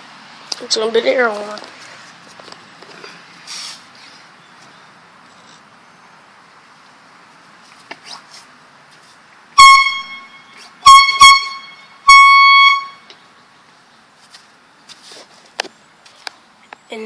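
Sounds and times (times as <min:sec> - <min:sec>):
air horn blasts: 0:09.6 - 0:13.1.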